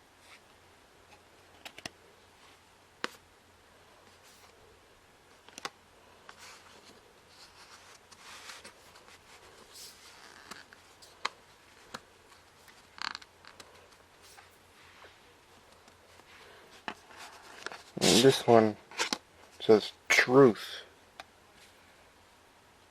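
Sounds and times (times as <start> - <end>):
cd packaging rustling: 1.4 - 2.0, 5.3 - 14.6.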